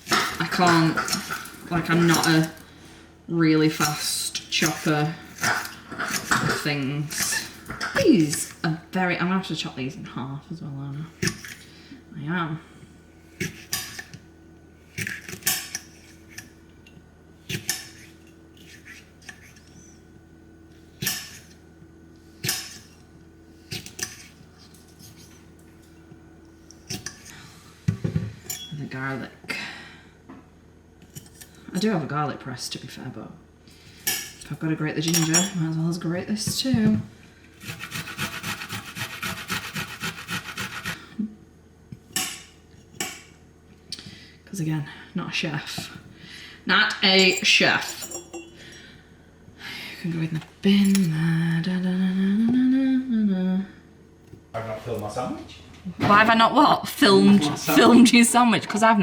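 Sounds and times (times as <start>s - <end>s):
garlic grating on hand grater: 37.6s - 41.0s.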